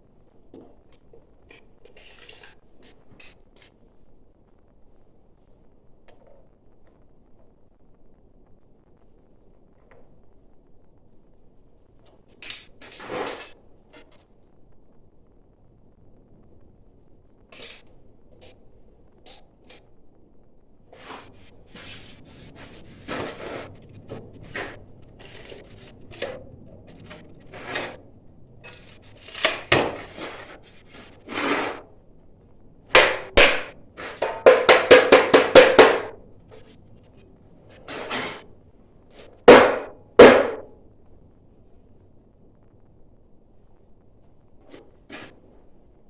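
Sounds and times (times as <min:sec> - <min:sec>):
fire brick knocks and scrapes: 0:12.3 - 0:13.6, 0:20.9 - 0:31.9, 0:32.9 - 0:38.5, 0:39.2 - 0:40.7, 0:44.6 - 0:45.6.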